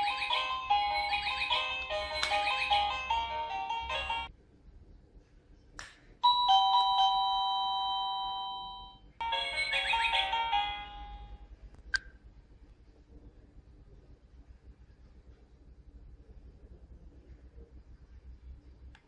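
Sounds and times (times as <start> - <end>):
doorbell chiming: 0.0 - 4.3, 6.2 - 11.4
doorbell click: 6.2 - 11.2.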